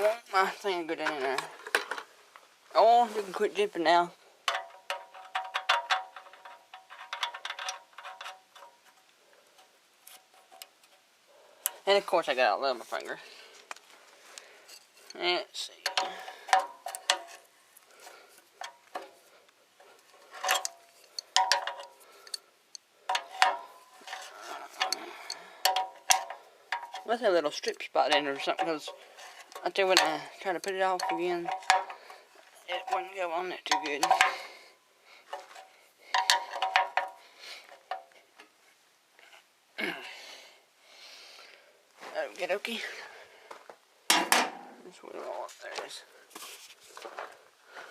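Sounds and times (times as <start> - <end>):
metal parts clinking and scraping: 4.5 - 9.0, 14.7 - 17.5, 20.0 - 22.4, 23.1 - 34.6, 35.3 - 37.2.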